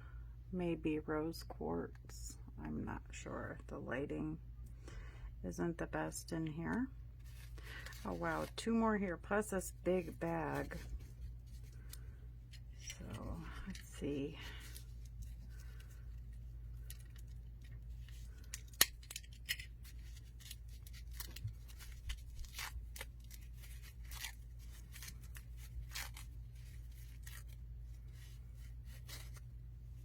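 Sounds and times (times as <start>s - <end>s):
steady low hum: 0.0s - 30.0s
wrapping crinkling and tearing: 7.2s - 30.0s.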